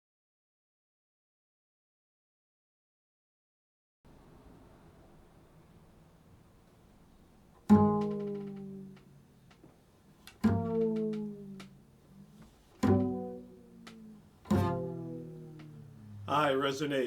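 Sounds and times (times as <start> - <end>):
faint hiss: 4.1 - 8.0
low plucked string notes: 7.6 - 9.6, 10.3 - 17.0.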